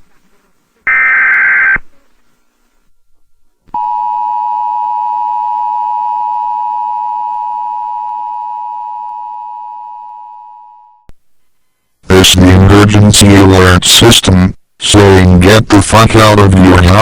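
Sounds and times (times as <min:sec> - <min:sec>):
screechy digital data burst: 0:00.9 - 0:01.8.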